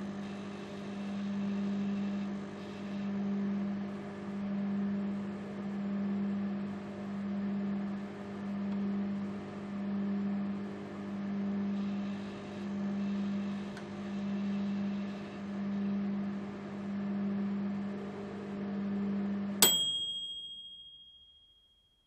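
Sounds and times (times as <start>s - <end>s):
microwave oven humming: 0.0s - 21.2s
microwave ding: 19.6s - 21.9s.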